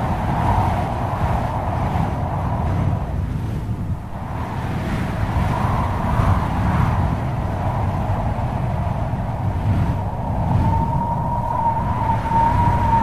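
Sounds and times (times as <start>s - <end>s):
low wind rush: 0.0s - 13.0s
thin wind whistle: 4.1s - 13.0s.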